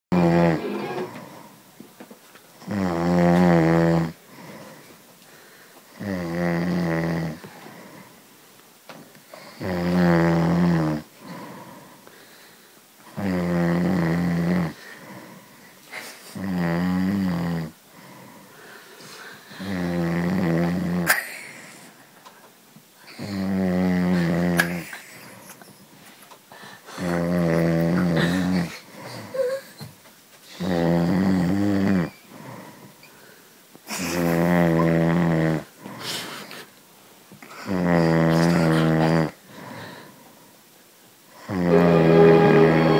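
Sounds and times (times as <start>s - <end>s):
man snoring loudly: 2.7s - 4.2s, 6.0s - 7.4s, 9.6s - 11.1s, 13.2s - 14.8s, 16.4s - 17.7s, 19.6s - 21.1s, 23.2s - 24.8s, 27.0s - 28.6s, 30.6s - 32.1s, 34.1s - 35.7s, 37.6s - 39.3s, 41.4s - 41.9s.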